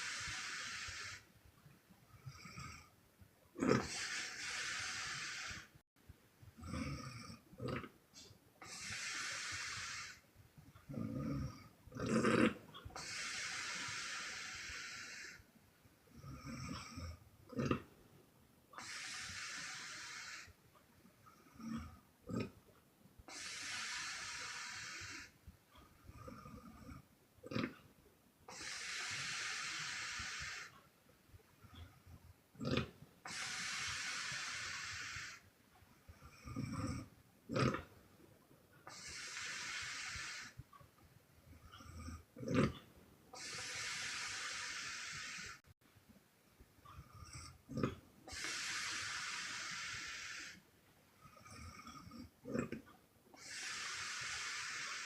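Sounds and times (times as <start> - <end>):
hissing puff of breath out: 0.0 - 1.3, 3.7 - 5.8, 8.2 - 10.2, 13.0 - 15.4, 18.8 - 20.5, 23.3 - 25.4, 28.5 - 30.8, 33.3 - 35.4, 38.9 - 40.6, 43.4 - 45.6, 48.3 - 50.6, 53.4 - 55.0
person snoring: 0.0 - 1.3, 3.6 - 5.7, 6.6 - 10.2, 10.9 - 15.4, 16.1 - 17.9, 18.8 - 20.5, 23.3 - 25.3, 28.5 - 30.8, 32.6 - 35.4, 36.2 - 37.9, 38.9 - 40.6, 41.7 - 42.8, 43.4 - 45.6, 47.0 - 50.6, 53.4 - 55.0
woman snoring: 23.3 - 25.3, 32.6 - 35.4, 43.4 - 45.7, 47.1 - 50.6, 53.4 - 55.0.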